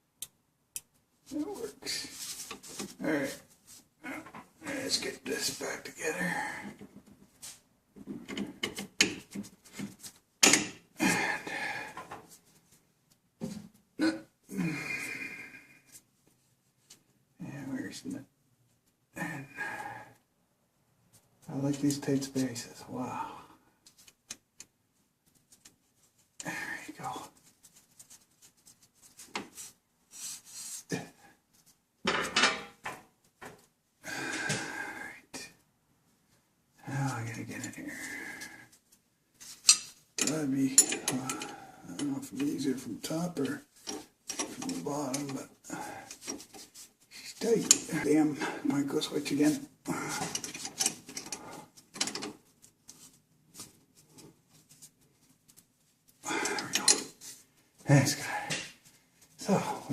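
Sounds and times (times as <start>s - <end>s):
tools rubbing and clattering: 1.3s - 5.1s, 39.4s - 48.4s, 49.3s - 57.5s
tools clicking and knocking: 8.2s - 9.4s, 10.4s - 10.8s, 39.6s - 41.5s, 50.2s - 52.4s, 56.5s - 57.2s.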